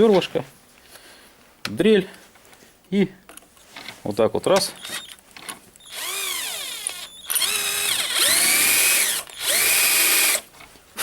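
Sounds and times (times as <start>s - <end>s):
electric drill whining: 4.8s - 5.2s, 5.8s - 10.5s.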